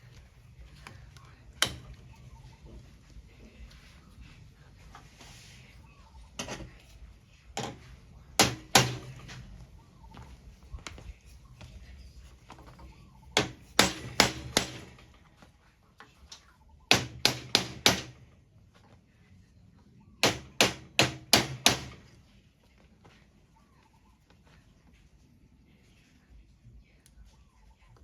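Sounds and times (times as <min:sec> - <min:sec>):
hammer striking copper bar: 0:01.6 - 0:02.0, 0:08.4 - 0:09.3, 0:13.4 - 0:15.1, 0:16.9 - 0:18.2, 0:20.2 - 0:22.2.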